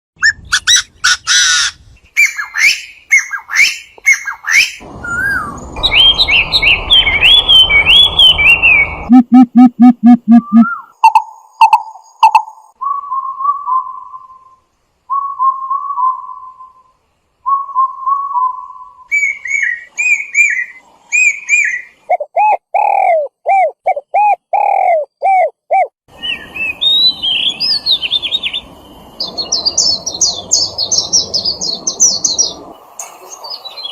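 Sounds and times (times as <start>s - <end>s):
fast high bird chirps: 0.2s - 12.6s
warbled whistled bird phrases: 0.2s - 27.7s
series of falling bird notes: 2.2s - 23.2s.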